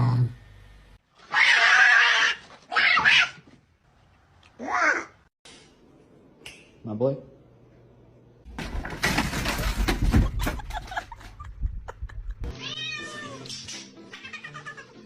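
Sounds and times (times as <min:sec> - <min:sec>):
rustling and scuffling with knocks: 0:08.5 - 0:11.7
cat meowing: 0:12.5 - 0:13.5.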